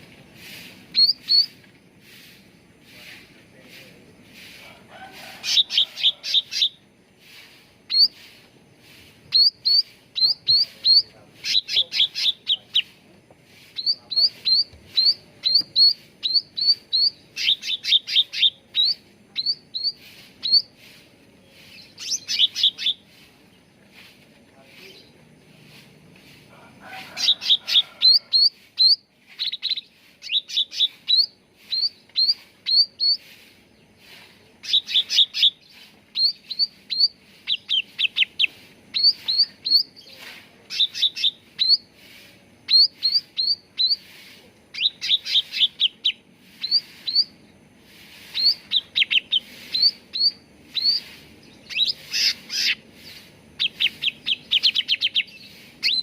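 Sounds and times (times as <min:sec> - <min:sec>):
songbird chirping: 0:00.0 - 0:56.0.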